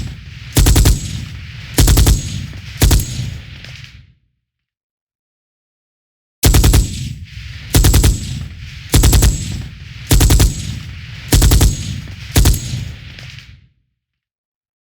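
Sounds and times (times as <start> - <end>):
machine gun bursts: 0.6 - 3.4, 9.0 - 10.7, 11.3 - 13.0.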